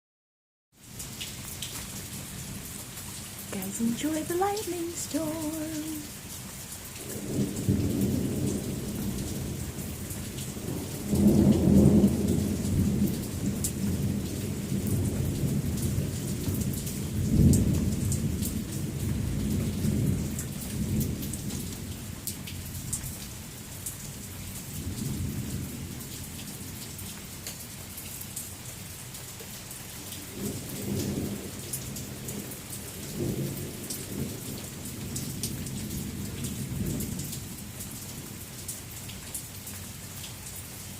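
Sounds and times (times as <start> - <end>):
steady rain with drips: 0.7 - 40.9
thunder rumbling: 7.0 - 22.0.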